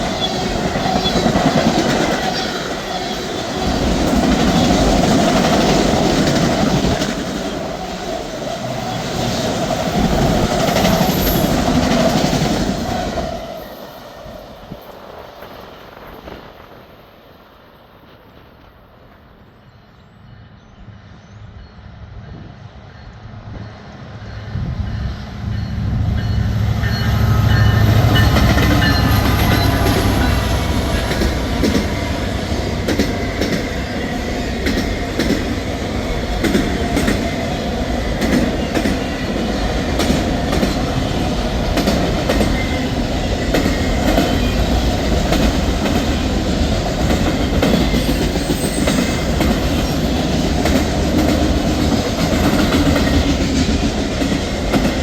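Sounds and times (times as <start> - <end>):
train wheel noise: 0.0 - 20.5, 22.1 - 55.0
diesel locomotive rumble: 23.2 - 55.0.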